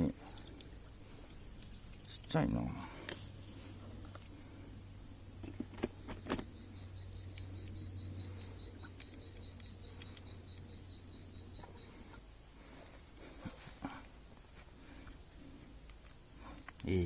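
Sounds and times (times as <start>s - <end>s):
insect trilling: 0.0s - 12.6s
crickets chirping: 0.0s - 17.0s
low steady hum: 0.0s - 17.0s.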